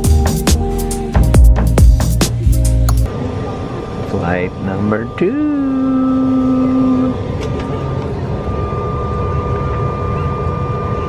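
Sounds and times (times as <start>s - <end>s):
thin steady whine: 0.0s - 11.0s
jet engine drone: 3.1s - 11.0s.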